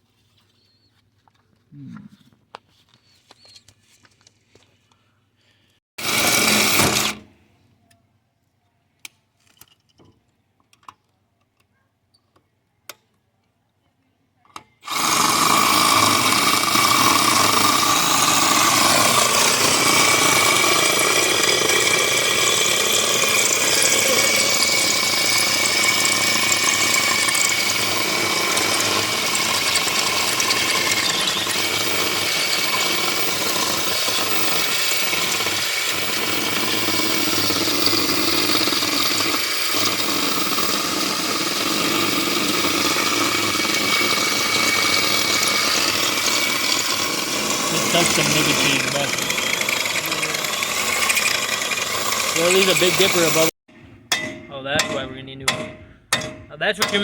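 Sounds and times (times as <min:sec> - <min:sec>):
power drill boring into metal: 0:06.0 - 0:07.3, 0:14.8 - 0:53.6.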